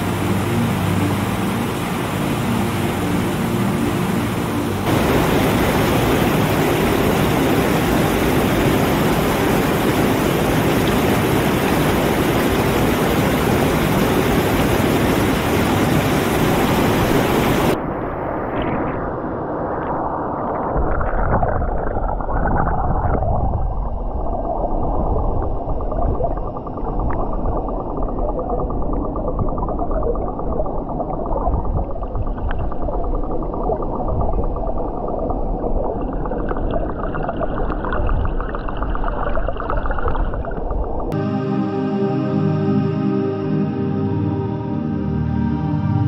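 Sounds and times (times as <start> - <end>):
waterfall roaring: 0.0 - 17.8.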